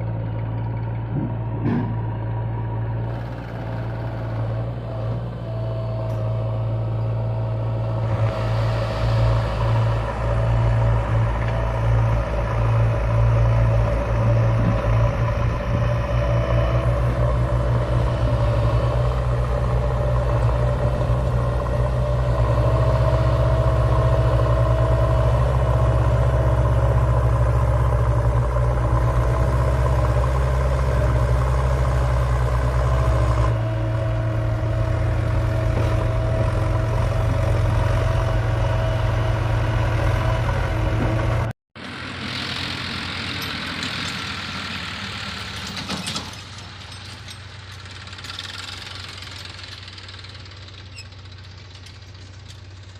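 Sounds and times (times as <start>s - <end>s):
diesel engine humming: 0.0s - 52.9s
hissy engine: 3.2s - 28.9s.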